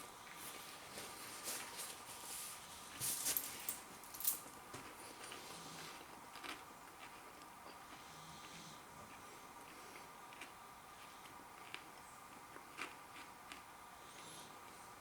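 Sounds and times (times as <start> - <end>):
chewing crispy batter: 5.3 - 15.0.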